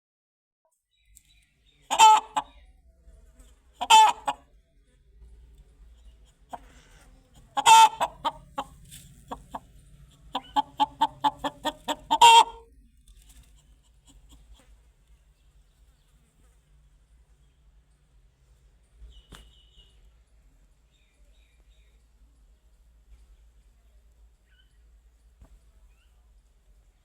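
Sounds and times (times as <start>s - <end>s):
chicken clucking: 1.8s - 2.6s, 3.8s - 4.4s, 6.0s - 12.7s, 13.3s - 14.8s.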